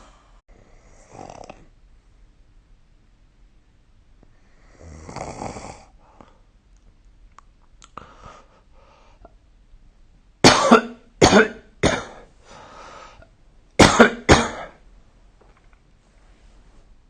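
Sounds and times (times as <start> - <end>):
person coughing: 10.4 - 12.3, 13.8 - 14.8.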